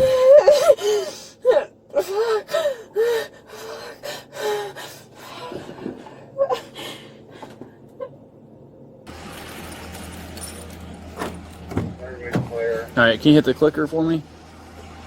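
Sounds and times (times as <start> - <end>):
woman gasping and sobbing: 0.0 - 5.6.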